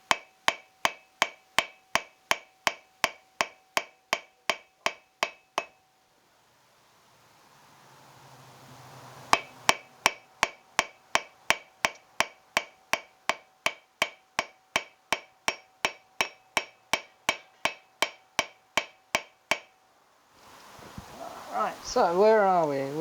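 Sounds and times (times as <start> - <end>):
hand hammer ringing on metal: 0.0 - 5.8, 9.4 - 19.7
rising hiss: 6.7 - 9.6, 20.3 - 23.0.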